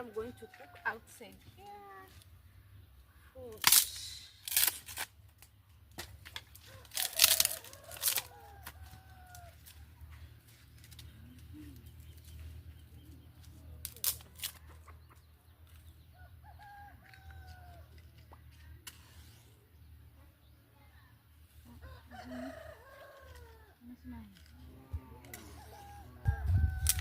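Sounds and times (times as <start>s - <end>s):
rooster crowing: 21.8s - 23.7s, 25.3s - 27.0s.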